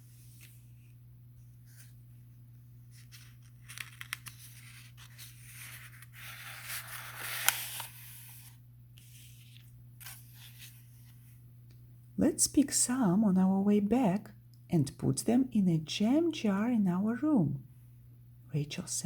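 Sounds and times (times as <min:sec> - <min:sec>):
low steady hum: 0:00.0 - 0:19.0
book page turning: 0:00.1 - 0:00.9, 0:02.9 - 0:11.2
paper rustling: 0:02.9 - 0:11.2.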